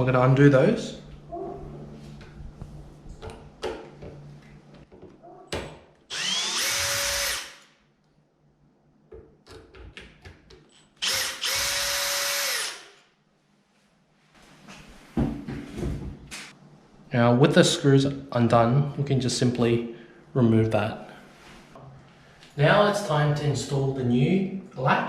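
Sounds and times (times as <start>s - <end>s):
power drill motor whining: 6.1s - 7.7s, 11.0s - 13.0s.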